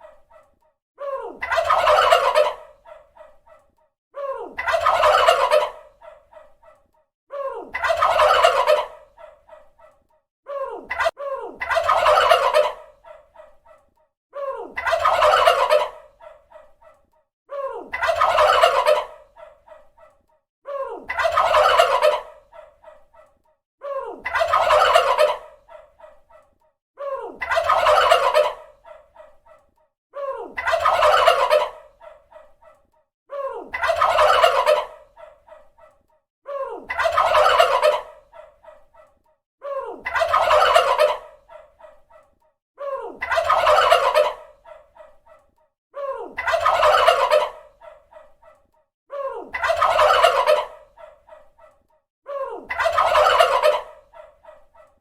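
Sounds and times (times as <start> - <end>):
turkey gobbling: 1.4 - 3.5, 4.6 - 6.8, 7.7 - 9.7, 10.9 - 13.8, 14.8 - 16.8, 17.9 - 20.1, 21.1 - 23.1, 24.2 - 26.4, 27.4 - 29.4, 30.6 - 32.8, 33.7 - 35.7, 36.9 - 38.8, 40.0 - 42.0, 43.2 - 45.2, 46.4 - 48.6, 49.5 - 51.7, 52.7 - 54.9.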